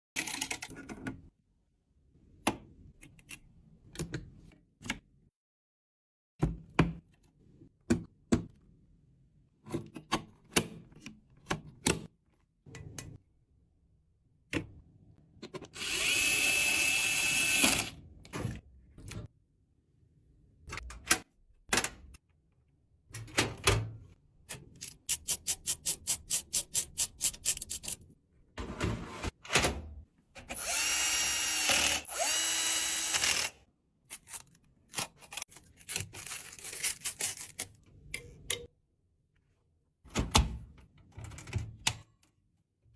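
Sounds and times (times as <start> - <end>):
electric screwdriver whirring: 15.8 - 18.0, 30.5 - 33.6.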